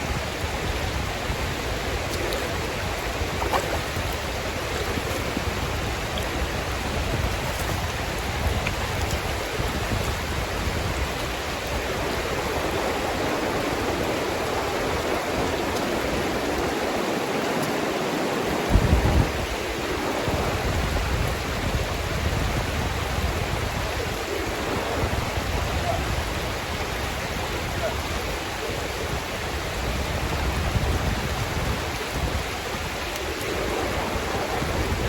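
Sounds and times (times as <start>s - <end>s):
river water rushing over rocks: 0.0s - 35.0s.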